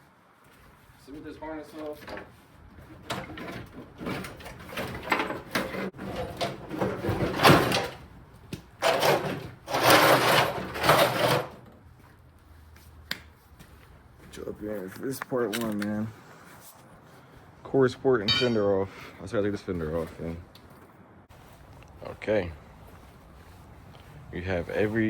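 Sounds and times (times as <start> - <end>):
parts scraping and clattering: 1.8 - 8.1, 8.8 - 11.9, 18.3 - 18.9.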